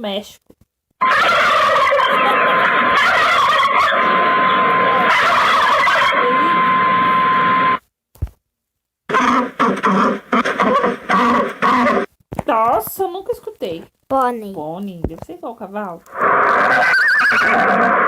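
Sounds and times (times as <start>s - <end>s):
turkeys gobbling through phone speaker: 1.0s - 6.2s, 9.1s - 12.1s, 16.6s - 18.0s.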